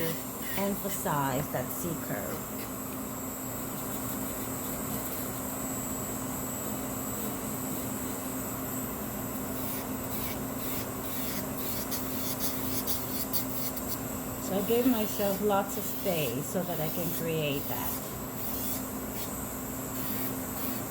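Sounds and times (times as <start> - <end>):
nail file scraping nail: 9.6 - 14.0, 14.7 - 19.4, 20.0 - 20.9.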